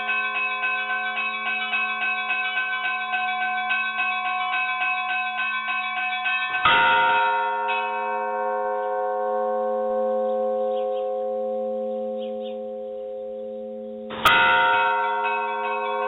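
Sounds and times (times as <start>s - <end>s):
small church bells pealing: 0.0s - 16.0s
heavy bell strike: 5.7s - 16.0s.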